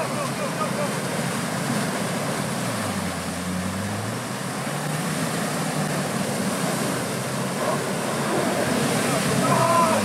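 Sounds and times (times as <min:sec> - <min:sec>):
steady rushing noise: 0:04.3 - 0:10.0.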